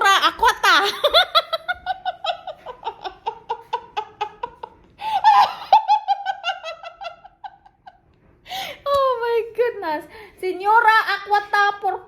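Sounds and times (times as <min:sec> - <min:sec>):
person laughing hard: 0:00.4 - 0:08.0.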